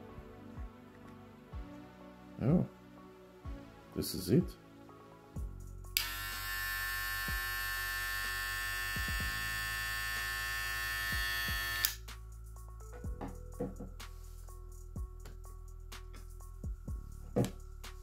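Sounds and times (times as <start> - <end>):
hair clipper switch click: 6.0 - 6.7, 10.1 - 12.0
hair clipper buzzing: 6.0 - 12.0.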